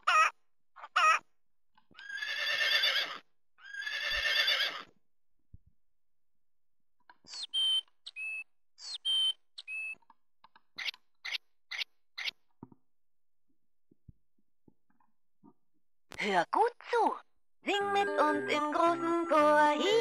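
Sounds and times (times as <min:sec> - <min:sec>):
whistled chirp from toy speaker: 0:07.3 - 0:10.0.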